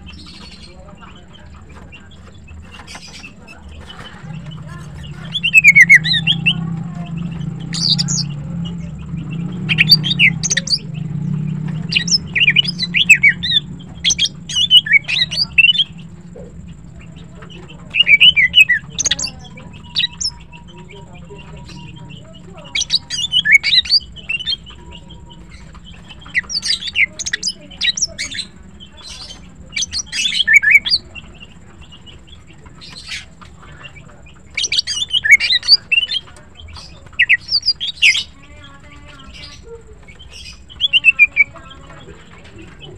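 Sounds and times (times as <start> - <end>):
bird chirps and squawks: 2.3 - 38.4.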